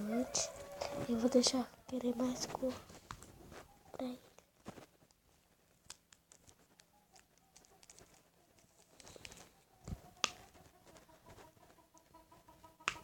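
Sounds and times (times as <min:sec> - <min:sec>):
chicken clucking: 0:00.0 - 0:02.8, 0:06.9 - 0:13.0
objects being handled: 0:01.9 - 0:11.5.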